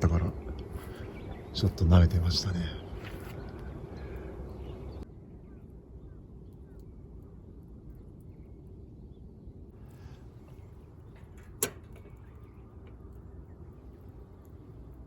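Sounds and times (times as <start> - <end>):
faint bird chirps: 0.0 - 11.4
steady low rumble: 0.0 - 15.0.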